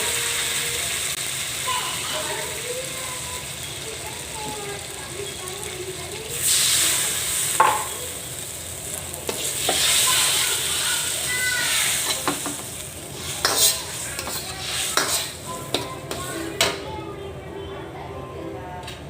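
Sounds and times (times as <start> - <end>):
food sizzling in hot oil: 0.0 - 16.8
spatula scraping a pan: 9.3 - 16.8.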